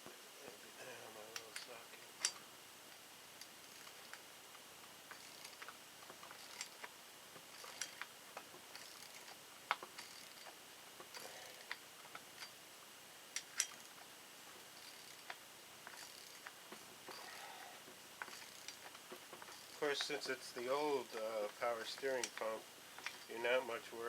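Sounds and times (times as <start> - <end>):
metal tools clicking and tapping: 1.4 - 2.4, 5.1 - 12.6, 13.4 - 14.1, 14.8 - 23.4.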